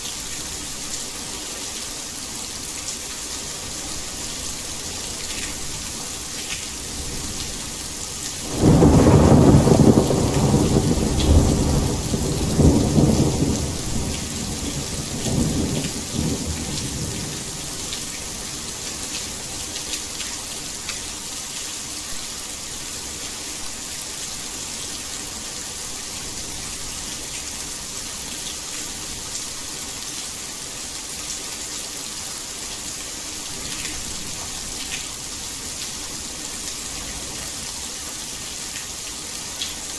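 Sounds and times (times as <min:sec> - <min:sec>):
heavy rain hissing: 0:00.0 - 0:19.8
thunder clap and rumble: 0:08.5 - 0:17.4.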